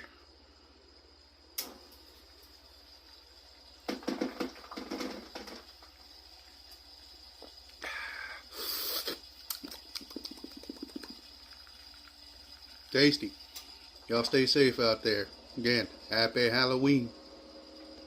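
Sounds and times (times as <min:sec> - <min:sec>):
breathy exhale: 0:07.8 - 0:09.2
mouth and breath sounds: 0:07.8 - 0:11.2
person sipping a drink: 0:07.8 - 0:11.2.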